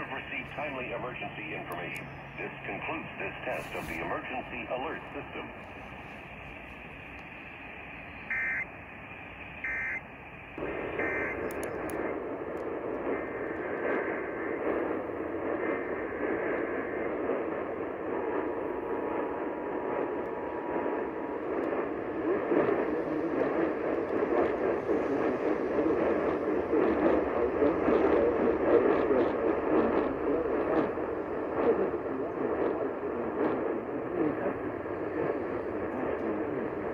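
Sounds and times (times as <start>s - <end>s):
radio hiss: 0.0s - 36.9s
warbling two-tone data bursts: 8.3s - 8.7s, 9.6s - 10.0s, 10.8s - 11.5s.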